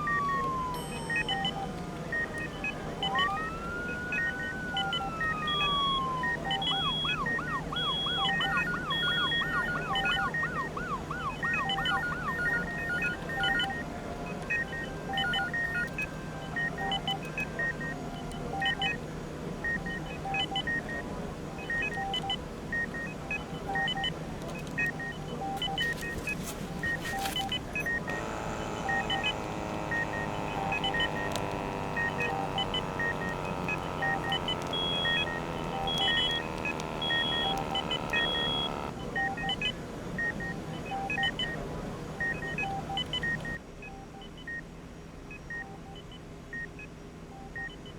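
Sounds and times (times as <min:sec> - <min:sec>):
monitors beeping: 0:00.0 - 0:19.0, 0:21.6 - 0:41.6
long high beeps: 0:03.0 - 0:13.8, 0:27.8 - 0:38.9
many sliding tones: 0:25.5 - 0:38.9.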